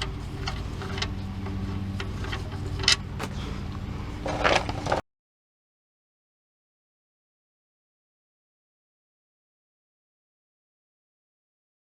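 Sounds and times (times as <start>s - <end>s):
oil draining: 0.0s - 5.0s
steady low hum: 0.0s - 5.0s.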